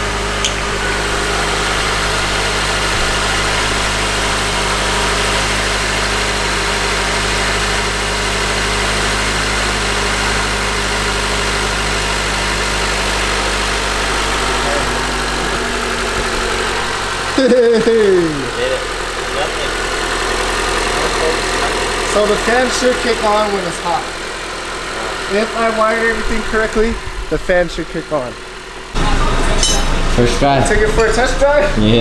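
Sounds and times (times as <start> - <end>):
car engine idling: 0.0 - 32.0.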